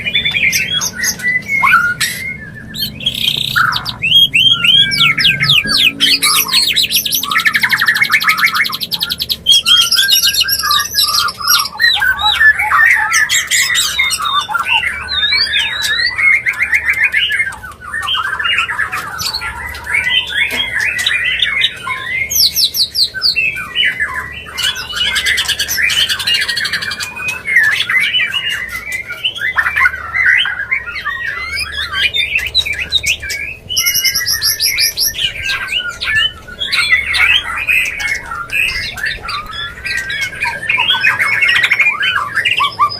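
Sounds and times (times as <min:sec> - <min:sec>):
bird whistling and trilling: 0:00.0 - 0:42.9.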